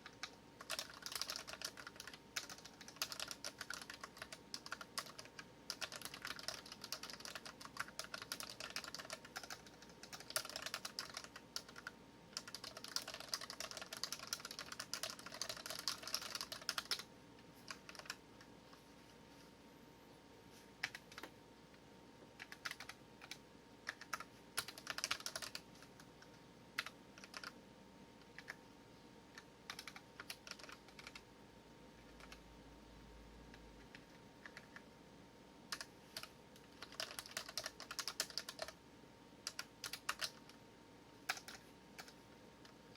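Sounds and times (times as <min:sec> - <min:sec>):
mechanical keyboard typing: 0:00.0 - 0:18.2, 0:20.8 - 0:21.3, 0:22.4 - 0:27.6, 0:28.2 - 0:28.6, 0:29.3 - 0:31.3, 0:32.1 - 0:32.4, 0:33.8 - 0:34.9, 0:35.7 - 0:38.8, 0:39.4 - 0:40.6, 0:41.2 - 0:42.8.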